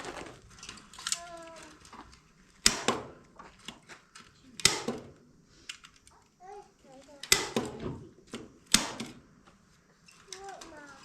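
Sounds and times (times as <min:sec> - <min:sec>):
staple gun snaps: 0:04.6 - 0:05.1.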